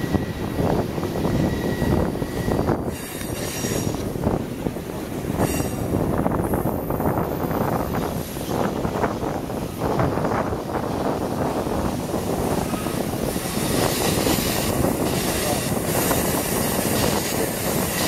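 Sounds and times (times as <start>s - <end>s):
train wheels rumbling on track: 0.0s - 18.0s
high-pitched wheel squeals: 1.2s - 4.0s, 5.4s - 5.9s.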